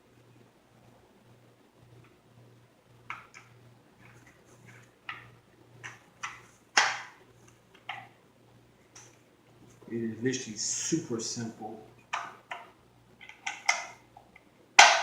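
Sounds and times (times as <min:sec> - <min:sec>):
rifle parts clicking and knocking: 0:12.1 - 0:15.0.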